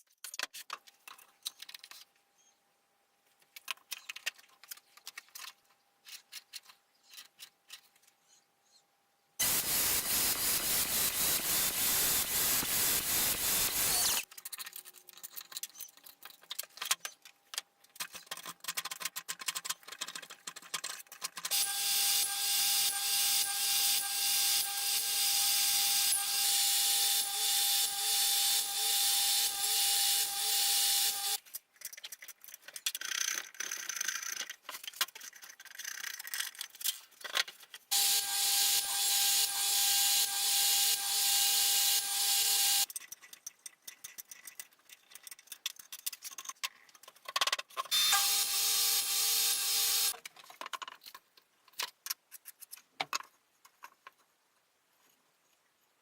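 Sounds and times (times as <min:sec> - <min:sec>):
power tool cutting: 0:09.4 - 0:14.2, 0:21.5 - 0:31.4, 0:37.9 - 0:42.9, 0:47.9 - 0:50.2.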